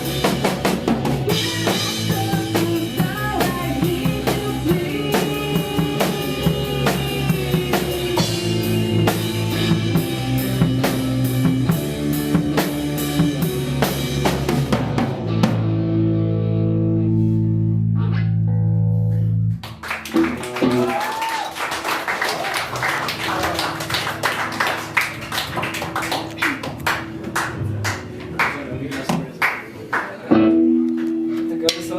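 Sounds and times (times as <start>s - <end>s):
drum kit: 0.0s - 16.4s, 18.9s - 31.9s
live rock band playing: 0.0s - 31.9s
crowd cheering and clapping: 19.6s - 30.3s.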